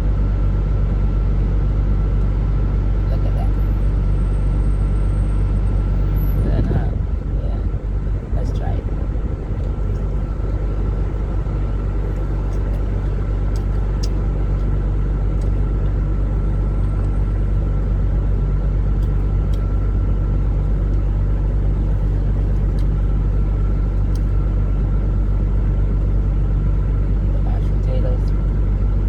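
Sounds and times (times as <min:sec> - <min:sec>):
low mechanical rumble: 0:00.0 - 0:29.0.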